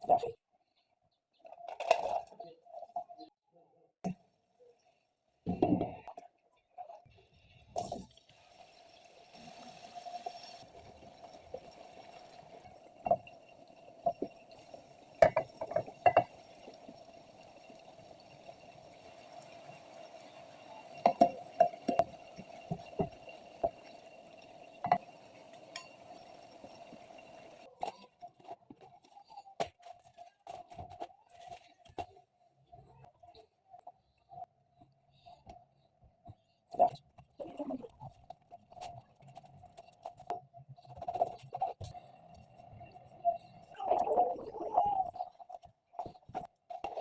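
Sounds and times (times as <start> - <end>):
liquid sounds: 7.6 - 27.9
faint steady hum: 8.4 - 27.7
utensils clinking on glass bowls: 10.0 - 27.7.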